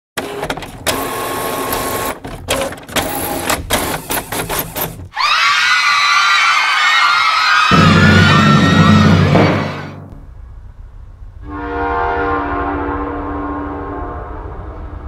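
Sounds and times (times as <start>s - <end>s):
music: 7.7s - 10.2s.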